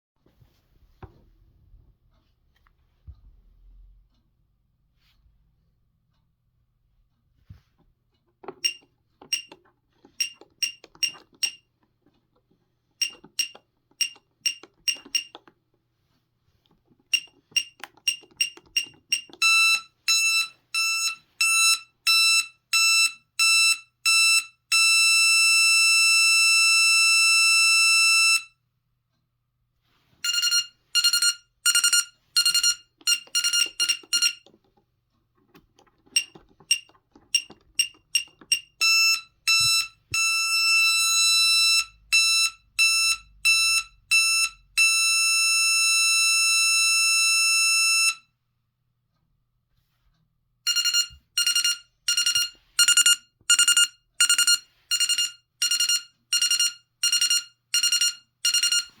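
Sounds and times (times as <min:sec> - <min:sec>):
alarm panel beeping: 0:10.2 - 0:11.6, 0:13.0 - 0:15.4, 0:17.2 - 0:28.5, 0:30.2 - 0:34.5, 0:36.2 - 0:48.2, 0:50.7 - 0:59.0
alarm panel steady tone: 0:30.2 - 0:34.5.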